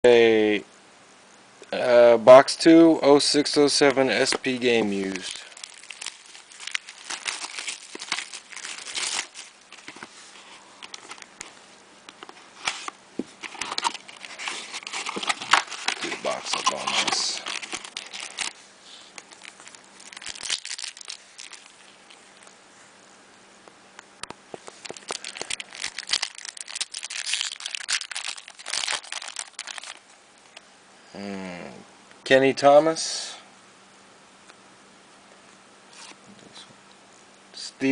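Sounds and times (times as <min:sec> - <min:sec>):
plastic wrapping crinkling: 0:04.2 - 0:11.6, 0:12.2 - 0:22.6, 0:24.5 - 0:30.6.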